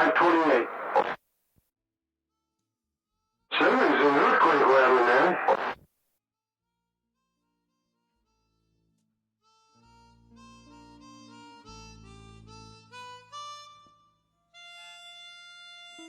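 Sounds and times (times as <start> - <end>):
harmonica over radio: 0.0 - 1.2, 3.6 - 5.8.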